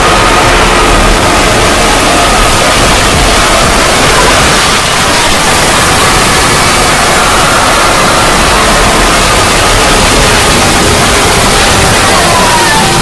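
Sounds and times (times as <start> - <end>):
distorted static noise: 0.0 - 13.0.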